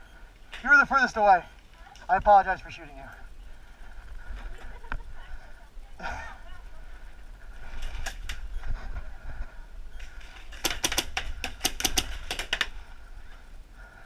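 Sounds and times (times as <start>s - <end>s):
paintball marker shots: 10.5s - 12.7s.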